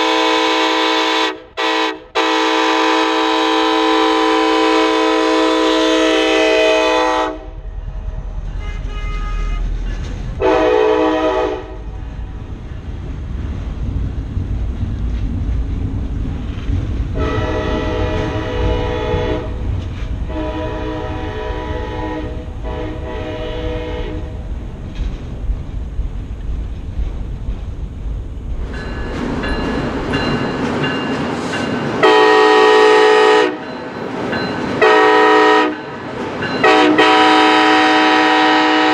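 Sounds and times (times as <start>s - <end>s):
locomotive air horn blasts: 0.0s - 7.6s, 8.6s - 9.8s, 10.4s - 11.9s, 17.2s - 19.6s, 20.2s - 24.4s, 32.0s - 33.6s, 34.8s - 35.9s, 36.6s - 38.9s
moving train rumble: 0.0s - 38.9s.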